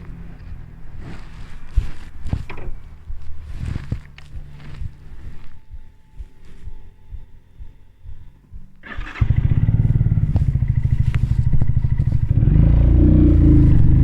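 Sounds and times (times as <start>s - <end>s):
motorcycle engine starting and idling: 0.0s - 5.5s, 8.8s - 14.0s.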